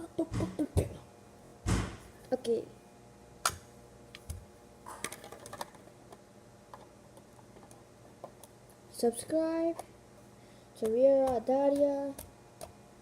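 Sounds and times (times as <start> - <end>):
plastic bricks clicking: 5.0 - 5.8.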